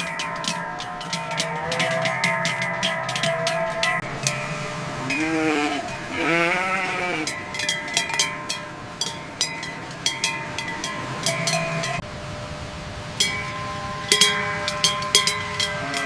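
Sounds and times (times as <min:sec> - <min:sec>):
livestock bells clanking: 0:00.0 - 0:12.2, 0:13.0 - 0:16.0
goat bleating: 0:01.2 - 0:07.4.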